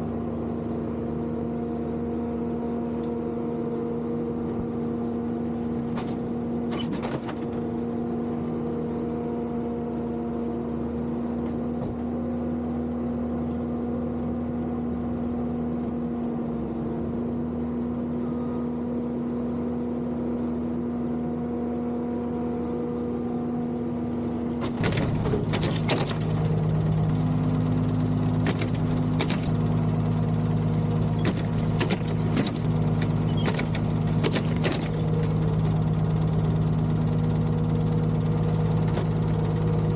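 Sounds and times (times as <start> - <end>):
clanks and knocks: 24.7 - 27.4, 28.4 - 29.8, 30.8 - 35.4
diesel engine idling: 24.8 - 39.9.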